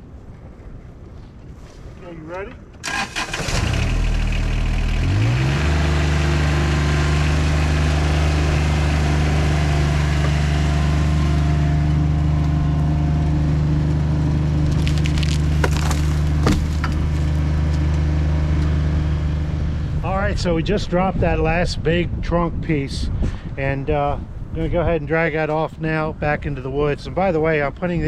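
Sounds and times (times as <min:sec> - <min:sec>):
tractor diesel engine running: 0:02.8 - 0:20.0
wood cracking: 0:14.6 - 0:17.8
log dropped with thud: 0:14.7 - 0:17.4.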